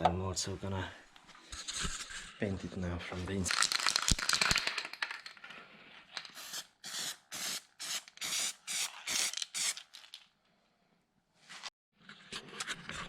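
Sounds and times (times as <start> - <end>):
spray paint hissing from can: 6.3 - 10.1.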